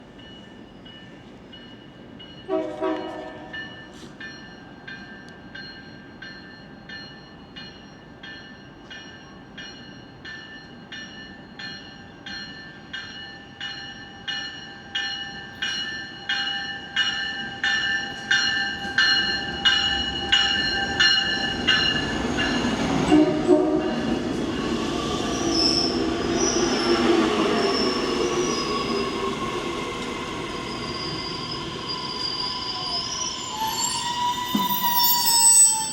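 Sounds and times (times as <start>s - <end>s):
train bell ringing: 0.0s - 35.9s
train horn blast: 2.5s - 3.6s, 23.1s - 24.1s
high wheel squeal: 30.5s - 35.9s.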